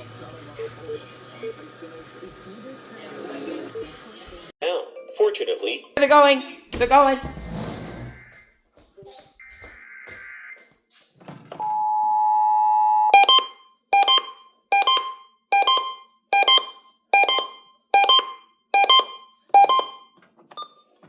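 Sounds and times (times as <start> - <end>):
harsh repeated beeps: 13.2 - 20.8.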